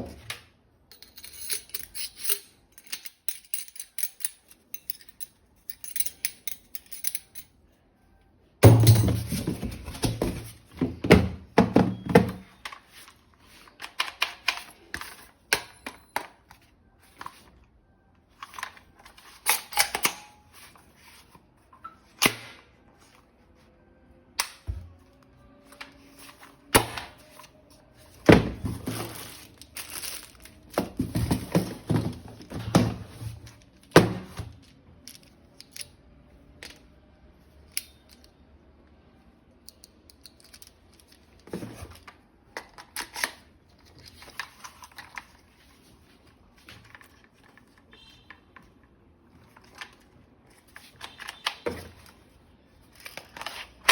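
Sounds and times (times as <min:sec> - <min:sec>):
plastic packaging crinkling: 0:28.8 - 0:30.8
plastic toy parts clicking: 0:39.6 - 0:41.2.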